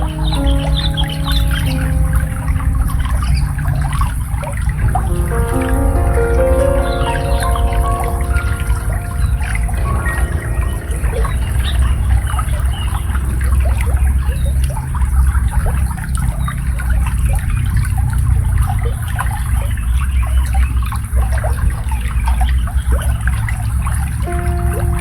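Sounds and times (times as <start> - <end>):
shallow water babbling: 0.0 - 21.8, 24.3 - 25.0.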